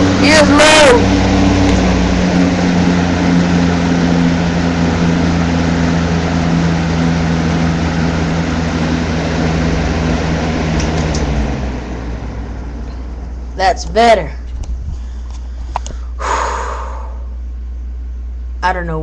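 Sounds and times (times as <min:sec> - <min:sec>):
air rushing from fan blades: 0:00.0 - 0:17.5
electric fan motor hum: 0:00.0 - 0:19.0.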